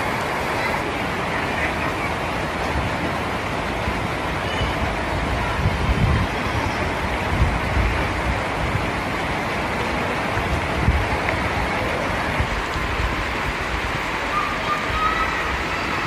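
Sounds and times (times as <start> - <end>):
rain falling: 0.0 - 16.0
wind on microphone: 2.5 - 9.4, 10.2 - 16.0.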